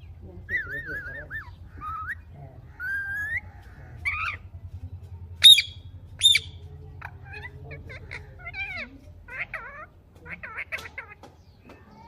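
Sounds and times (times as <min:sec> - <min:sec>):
parrot chirping: 0:00.0 - 0:04.7, 0:05.4 - 0:11.2
parrot screeching: 0:00.6 - 0:04.5.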